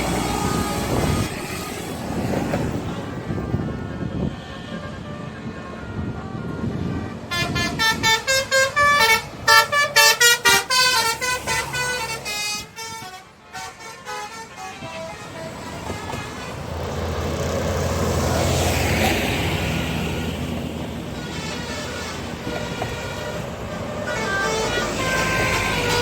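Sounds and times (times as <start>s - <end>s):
vehicle passing: 0.0s - 13.5s, 14.7s - 26.0s
multi-tone musical air horn: 0.0s - 17.0s, 21.0s - 26.0s.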